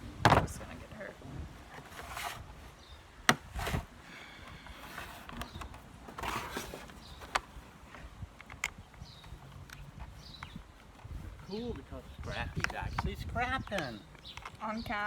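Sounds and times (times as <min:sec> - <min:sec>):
hard plastic parts clicking: 0:04.4 - 0:11.1, 0:12.5 - 0:15.0.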